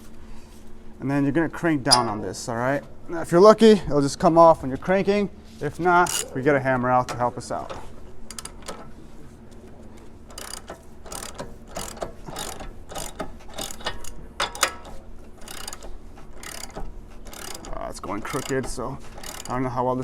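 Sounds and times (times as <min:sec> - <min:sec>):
ratchet wrench clicking: 0:06.0 - 0:06.3, 0:07.7 - 0:08.9, 0:10.3 - 0:19.6.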